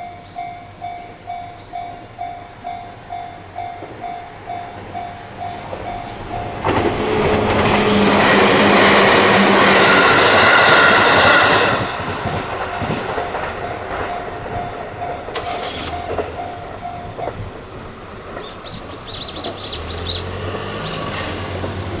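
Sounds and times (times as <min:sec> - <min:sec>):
crossing warning bell dinging: 0:00.0 - 0:22.0
train wheels rushing: 0:03.6 - 0:22.0
train motor whining: 0:14.5 - 0:22.0.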